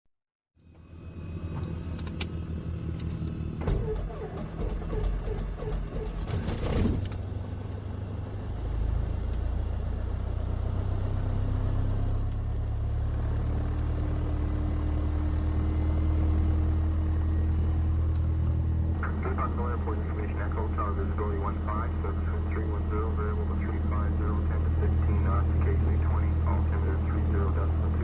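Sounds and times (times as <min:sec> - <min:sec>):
aircraft engine drone: 0:00.6 - 0:28.0
garbled radio transmission: 0:19.0 - 0:28.0.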